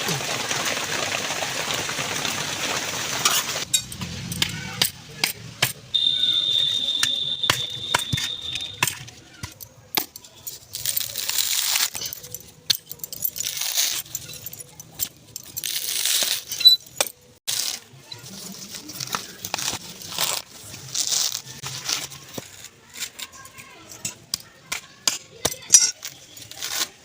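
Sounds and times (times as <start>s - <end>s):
utensils clinking and knocking: 3.2s - 5.8s, 7.0s - 17.4s, 22.3s - 26.6s
steady high whistle: 6.0s - 8.8s.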